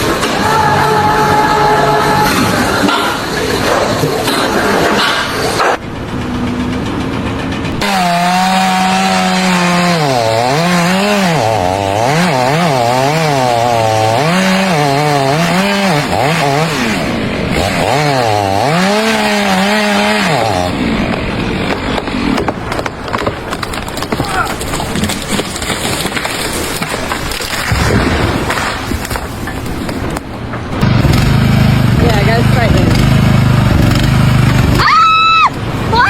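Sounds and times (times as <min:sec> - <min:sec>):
steady noisy background: 0:00.0 - 0:07.8
small engine revving: 0:07.7 - 0:22.4, 0:30.8 - 0:34.9.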